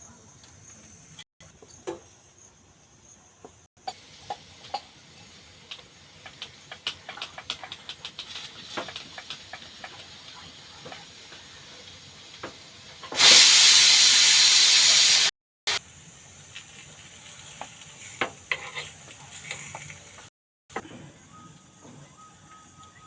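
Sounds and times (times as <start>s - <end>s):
hot oiled pan hissing: 3.8s - 20.3s
cooking utensils clicking: 5.7s - 11.1s.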